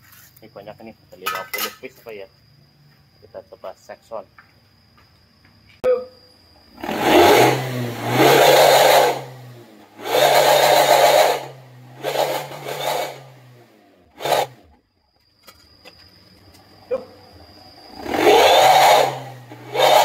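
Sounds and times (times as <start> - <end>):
exhaust growl from revving: 6.8 - 14.7, 17.9 - 20.0.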